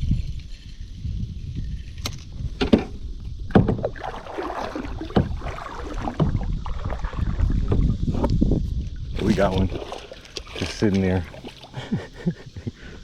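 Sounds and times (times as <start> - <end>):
wind rumble on microphone: 0.0 - 12.8
water splashing: 3.5 - 8.2, 9.0 - 12.2.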